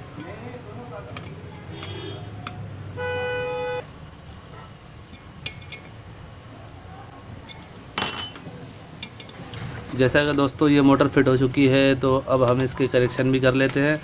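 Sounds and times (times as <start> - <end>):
spanner clinking on metal: 5.1 - 6.0, 7.4 - 9.4.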